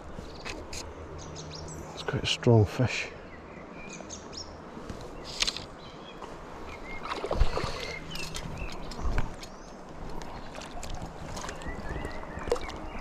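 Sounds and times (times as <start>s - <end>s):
running river water: 0.0s - 13.0s
fish splashing in water: 6.9s - 9.0s, 10.1s - 13.0s.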